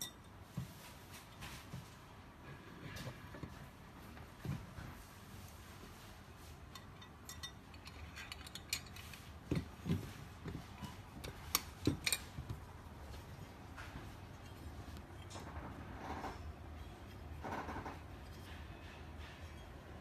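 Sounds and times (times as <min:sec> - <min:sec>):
metal parts clinking: 0:06.7 - 0:09.3.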